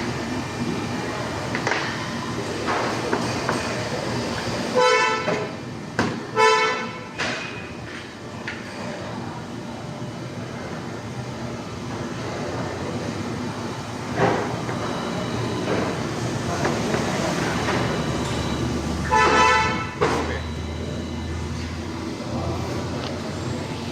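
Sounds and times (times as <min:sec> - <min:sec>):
steady background noise: 0:00.0 - 0:23.9
vehicle horn toots: 0:04.8 - 0:05.5, 0:06.3 - 0:07.2, 0:19.0 - 0:20.2.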